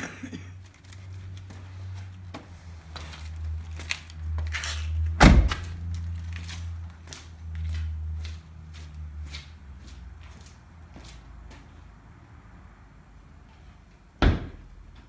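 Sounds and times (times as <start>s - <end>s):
door thudding shut: 5.2s - 5.7s, 14.2s - 14.7s.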